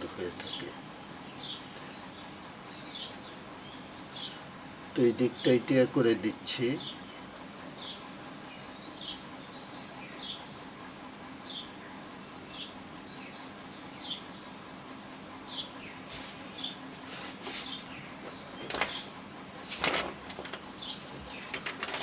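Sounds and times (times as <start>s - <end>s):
small bird chirping: 0.0s - 5.6s, 6.8s - 19.6s, 20.3s - 22.0s.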